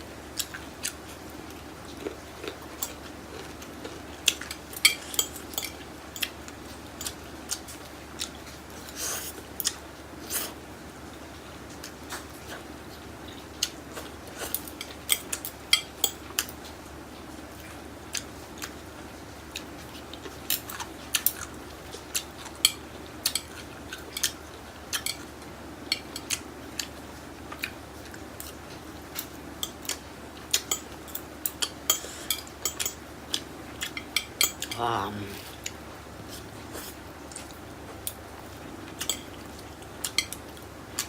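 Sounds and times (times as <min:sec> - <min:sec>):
faint steady hum: 0:00.0 - 0:41.0
close eating clicks and taps: 0:00.4 - 0:08.5, 0:19.5 - 0:25.3, 0:25.9 - 0:34.8, 0:38.9 - 0:41.0.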